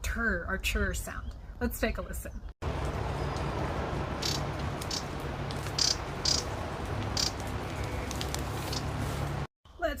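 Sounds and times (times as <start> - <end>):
bird churring calls: 4.2 - 5.1, 5.7 - 8.9.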